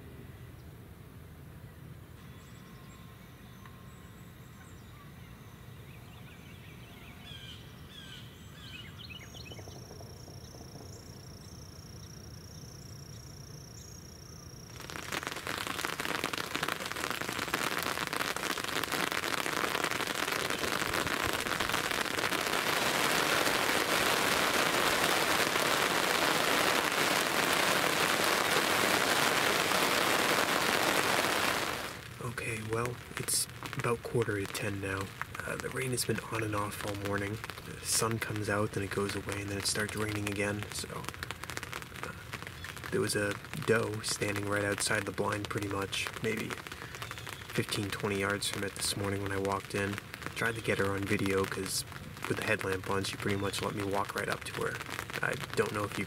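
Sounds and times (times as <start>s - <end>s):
faint bird chirps: 1.6s - 15.9s, 46.8s - 48.4s
heavy rain pattering: 14.7s - 56.0s.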